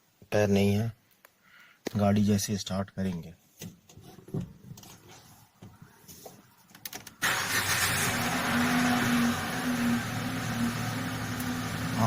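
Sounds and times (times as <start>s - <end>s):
car engine starting and idling: 7.2s - 12.0s.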